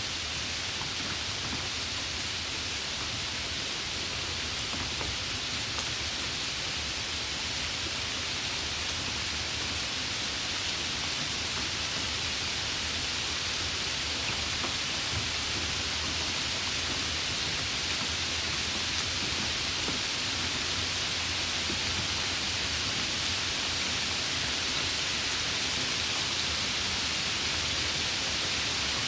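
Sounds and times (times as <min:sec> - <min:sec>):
steady rain hiss: 0:00.0 - 0:29.0.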